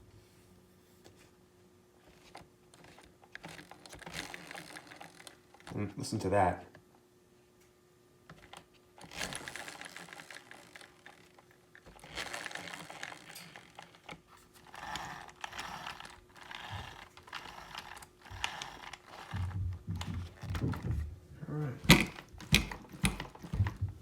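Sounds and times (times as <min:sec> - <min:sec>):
toy car gears whirring and clicking: 0:02.1 - 0:05.7, 0:08.3 - 0:20.7, 0:21.9 - 0:23.8.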